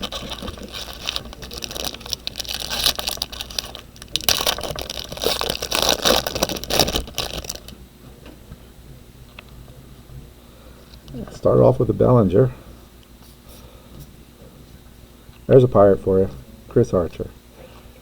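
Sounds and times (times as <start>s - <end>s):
foil wrapper crinkling and tearing: 0.0s - 7.8s.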